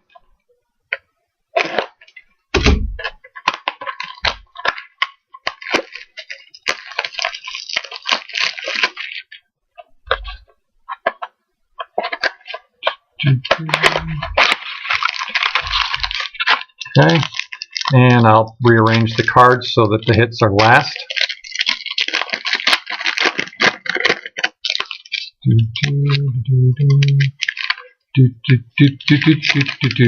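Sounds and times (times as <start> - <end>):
wrapper crackling and crinkling: 1.5 - 26.2, 26.8 - 28.2, 28.8 - 30.0
dull handling thumps: 2.6 - 3.2.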